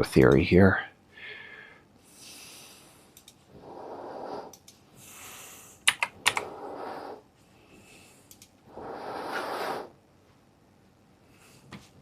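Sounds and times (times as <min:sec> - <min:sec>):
person breathing close to microphone: 0:01.1 - 0:09.9
sharp clicks and taps: 0:05.8 - 0:06.5.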